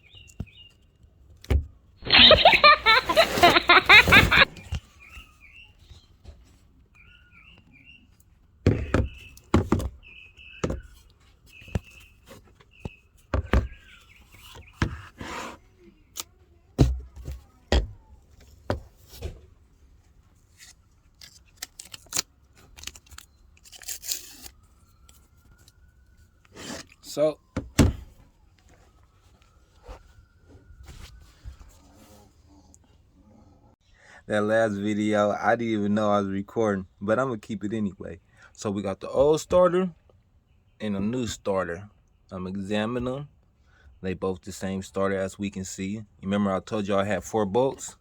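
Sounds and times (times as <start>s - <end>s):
handling knocks and clunks: 2.6s - 4.8s, 8.6s - 11.0s, 11.6s - 15.3s, 16.8s - 19.6s, 27.5s - 28.3s
bird chirps: 4.5s - 6.2s, 6.9s - 8.2s, 8.8s - 15.1s.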